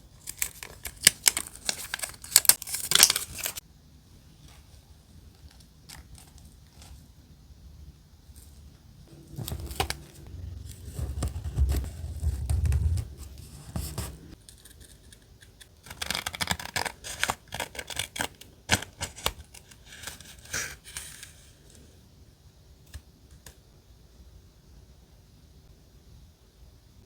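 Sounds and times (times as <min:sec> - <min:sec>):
dull low thuds: 0:09.1 - 0:14.4
paper handled on a desk: 0:09.3 - 0:14.4
scissors cutting paper: 0:10.8 - 0:21.4.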